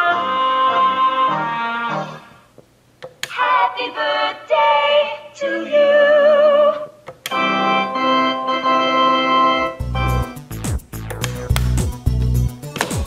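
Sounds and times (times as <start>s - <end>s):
electronic doorbell organ tune: 7.3s - 10.4s.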